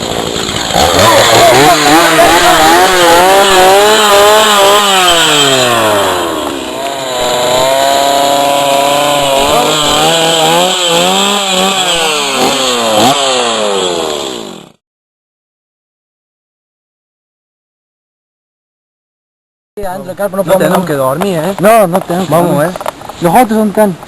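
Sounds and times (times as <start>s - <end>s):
chainsaw engine revving: 0.0s - 14.8s.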